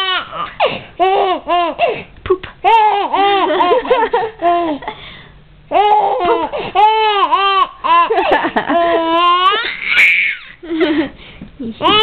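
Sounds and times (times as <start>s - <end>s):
baby laughing: 2.6s - 5.0s, 5.7s - 10.6s.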